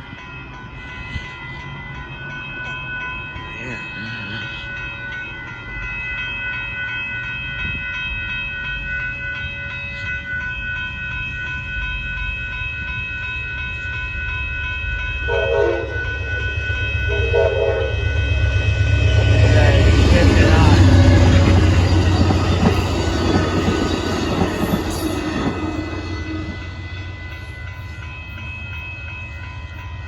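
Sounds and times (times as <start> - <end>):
crossing warning bell ringing: 0.0 - 30.0
train rumble: 9.8 - 30.0
train horn blasts: 15.3 - 18.3.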